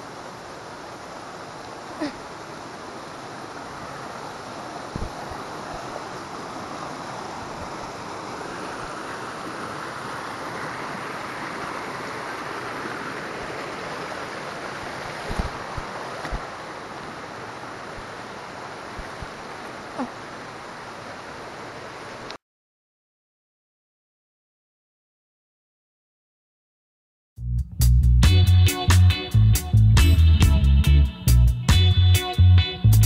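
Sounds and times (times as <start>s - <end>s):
stream water rushing: 0.0s - 22.4s.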